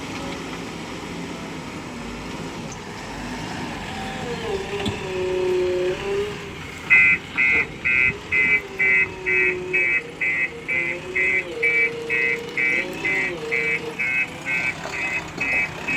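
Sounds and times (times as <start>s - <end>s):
diesel engine working: 0.0s - 15.9s
reversing alarm beeping: 6.8s - 15.9s.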